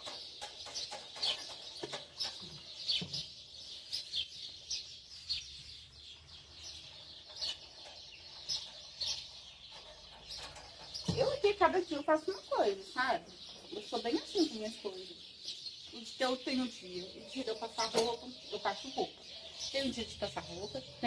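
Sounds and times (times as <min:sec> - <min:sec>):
small birds chirping: 0:00.0 - 0:21.0.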